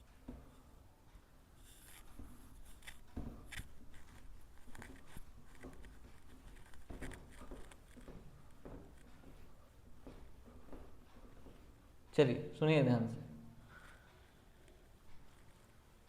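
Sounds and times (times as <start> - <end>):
small clicks and taps: 1.8 - 9.4.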